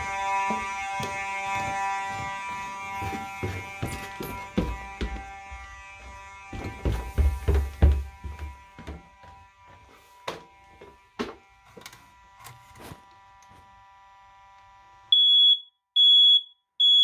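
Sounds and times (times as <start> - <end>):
fire alarm buzzer: 0.0 - 17.0
knocks and thumps: 3.1 - 5.8, 6.5 - 9.4.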